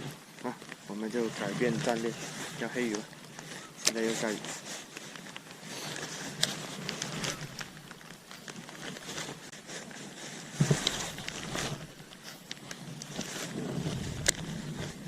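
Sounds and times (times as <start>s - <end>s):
rain pattering: 6.4s - 9.4s.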